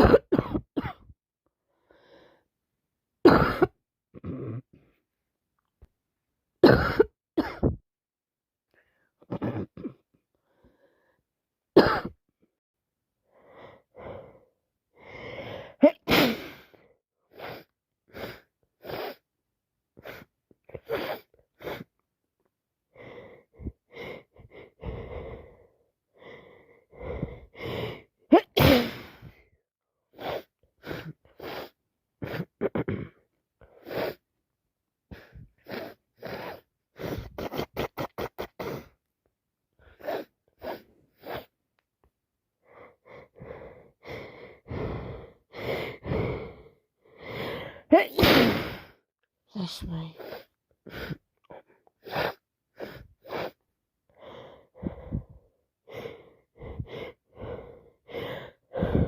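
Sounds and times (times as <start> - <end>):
person sneezing: 15.8 - 16.6, 28.3 - 29.3, 47.9 - 48.9.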